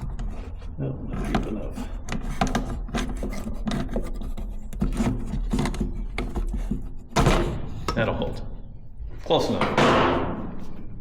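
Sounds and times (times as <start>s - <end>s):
tool scraping a hard surface: 0.0s - 7.6s.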